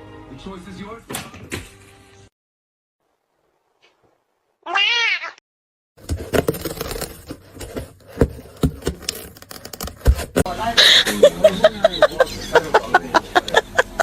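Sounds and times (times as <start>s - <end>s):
cat meowing: 4.6s - 5.4s.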